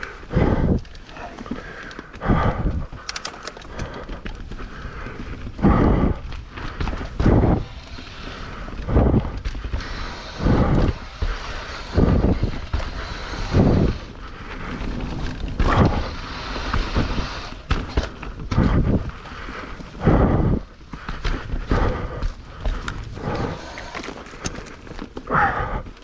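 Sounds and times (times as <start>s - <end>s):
wind buffeting microphone: 2.2s - 26.0s
bike tyres rolling: 3.0s - 20.1s, 20.8s - 26.0s.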